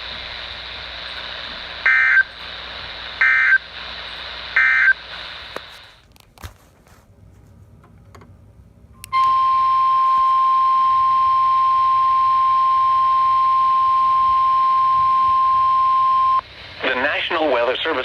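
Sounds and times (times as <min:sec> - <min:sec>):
steady warning alarm tone: 0:01.8 - 0:02.4, 0:03.2 - 0:03.7, 0:04.5 - 0:05.0, 0:09.1 - 0:16.5.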